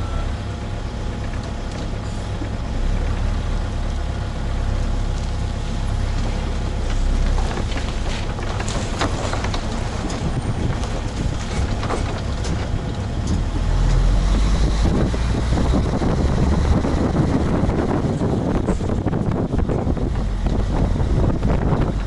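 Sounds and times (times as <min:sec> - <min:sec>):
excavator diesel engine running: 0:00.0 - 0:22.0
short knocks and scrapes: 0:06.9 - 0:14.0.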